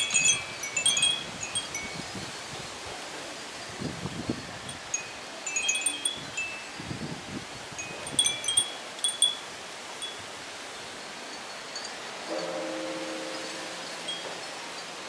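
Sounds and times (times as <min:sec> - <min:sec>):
wind chimes ringing: 0:00.0 - 0:02.6, 0:03.3 - 0:15.0
wind rumbling on microphone: 0:00.0 - 0:09.4.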